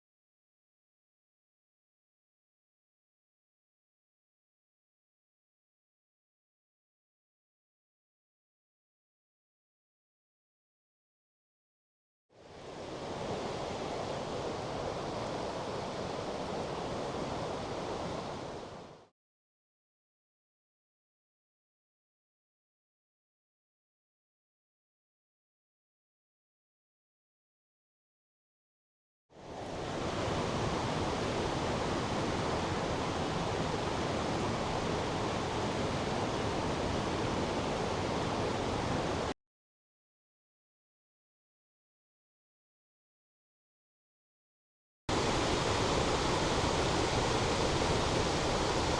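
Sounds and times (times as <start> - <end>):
mountain stream rushing: 12.6 - 19.0, 29.6 - 39.3, 45.1 - 48.9.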